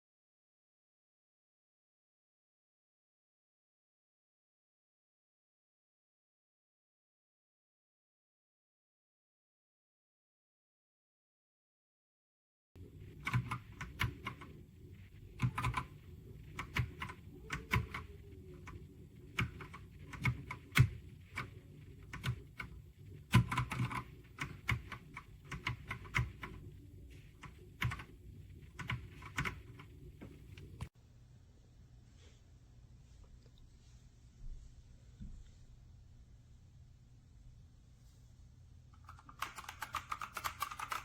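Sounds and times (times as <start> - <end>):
steady low hum: 12.8 - 39.3
mechanical keyboard key clicks: 39.0 - 41.0.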